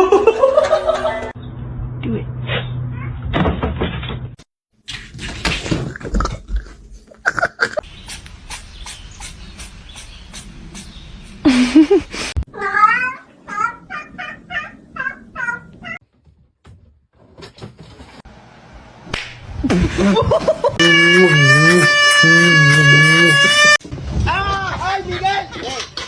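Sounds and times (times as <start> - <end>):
cat yowling: 20.8 - 23.8.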